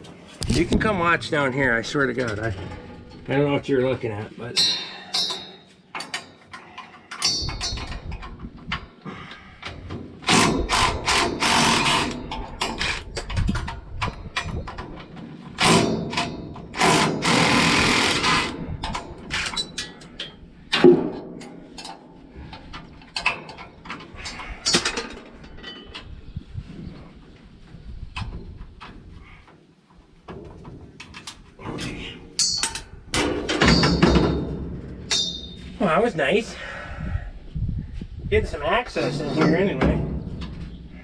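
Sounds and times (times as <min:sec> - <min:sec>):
metal clanks and knocks: 0:01.6 - 0:03.6, 0:04.5 - 0:17.5, 0:18.2 - 0:26.2, 0:30.2 - 0:35.8.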